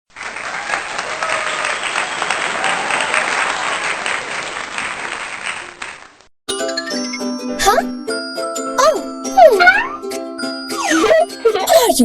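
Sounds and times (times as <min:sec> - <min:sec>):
crowd clapping: 0:00.1 - 0:06.3.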